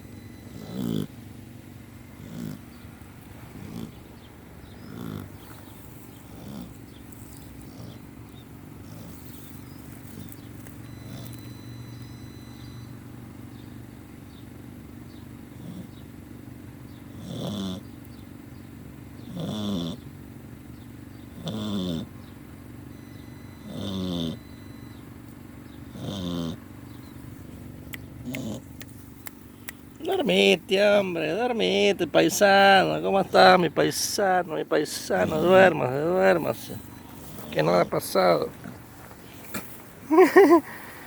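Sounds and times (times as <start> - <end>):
dog snoring: 0.4 - 1.2, 2.1 - 12.0, 15.5 - 16.0, 17.1 - 17.9, 19.2 - 20.0, 21.4 - 22.1, 23.1 - 24.7, 25.9 - 29.0, 29.7 - 39.7.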